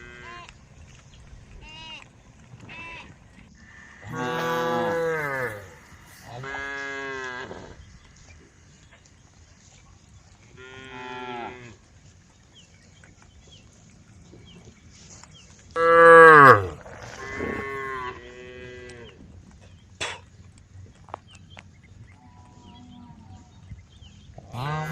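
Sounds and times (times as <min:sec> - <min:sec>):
cows mooing: 0:04.0 - 0:07.8, 0:15.8 - 0:19.1, 0:24.5 - 0:24.9.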